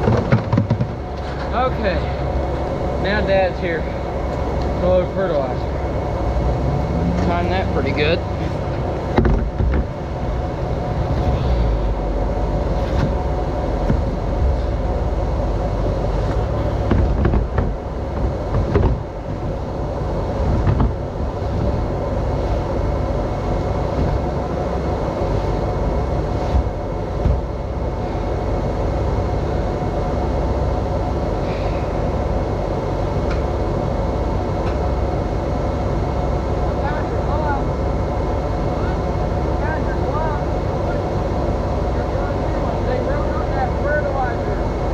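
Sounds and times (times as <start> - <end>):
knocks and clunks: 0.0 - 1.7, 8.4 - 10.0, 13.8 - 14.6, 16.2 - 19.5, 20.4 - 21.9, 23.9 - 24.5, 26.5 - 27.6
farm machinery engines running: 0.0 - 44.9.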